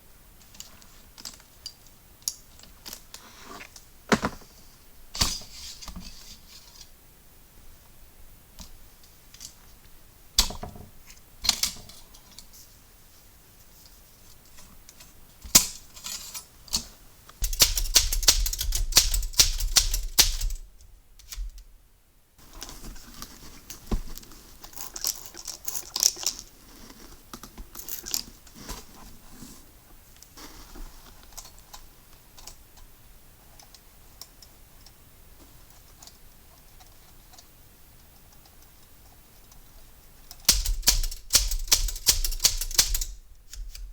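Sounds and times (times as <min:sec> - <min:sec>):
metallic clicks and clatters: 0:15.5 - 0:21.6, 0:40.3 - 0:43.9
rapid rattling: 0:17.4 - 0:20.7, 0:40.5 - 0:43.2.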